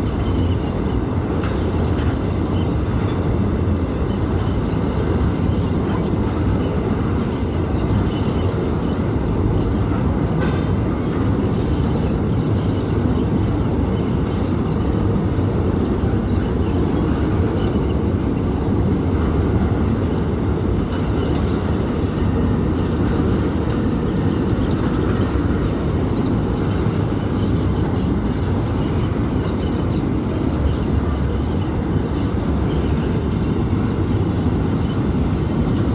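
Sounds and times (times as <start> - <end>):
freight train wheels rumbling on rail: 0.0 - 35.9.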